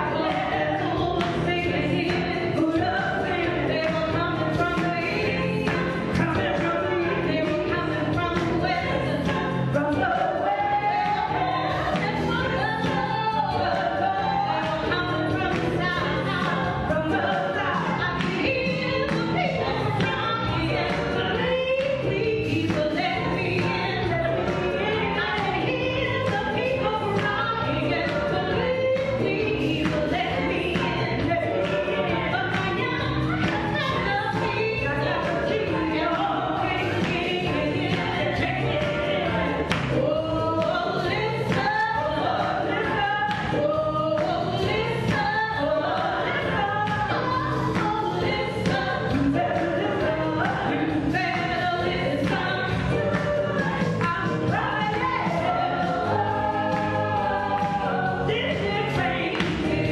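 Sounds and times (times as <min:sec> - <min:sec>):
choir singing gospel song: 0:00.0 - 0:59.9.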